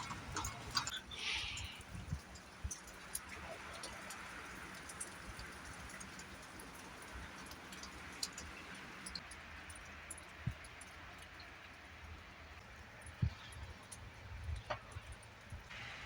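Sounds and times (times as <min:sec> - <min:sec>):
wind rumble on microphone: 0:00.0 - 0:06.0, 0:13.0 - 0:15.7
raindrops ticking: 0:00.0 - 0:15.9.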